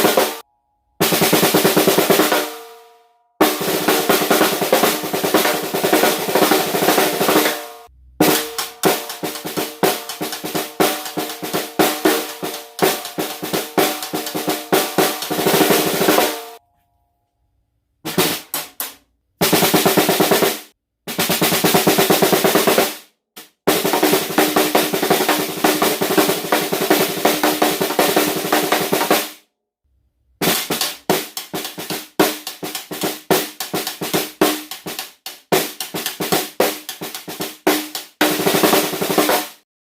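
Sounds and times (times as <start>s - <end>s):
snare drum rolls: 0.0s - 0.4s, 1.0s - 2.7s, 3.4s - 16.6s, 18.1s - 29.4s, 30.4s - 39.6s.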